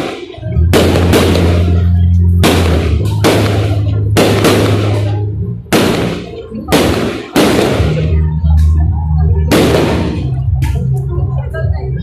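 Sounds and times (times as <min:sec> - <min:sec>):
fireworks bangs: 0:00.0 - 0:08.3, 0:09.5 - 0:10.5
music playing: 0:00.0 - 0:12.0.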